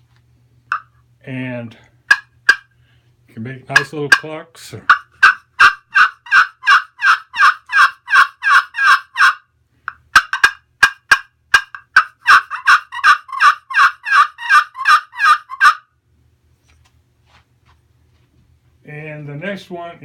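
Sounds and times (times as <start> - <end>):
turkey call clucks: 2.1 - 2.8, 4.9 - 15.9
turkey call yelps: 4.9 - 9.5, 10.1 - 15.9.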